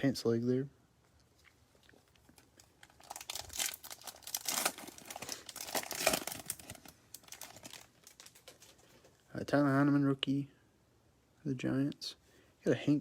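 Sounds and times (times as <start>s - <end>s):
foil wrapper crinkling: 2.1s - 9.1s.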